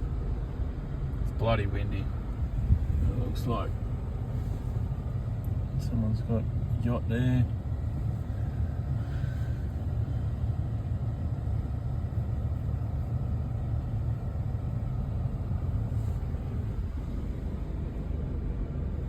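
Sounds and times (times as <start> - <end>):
wind buffeting microphone: 2.4 - 4.1.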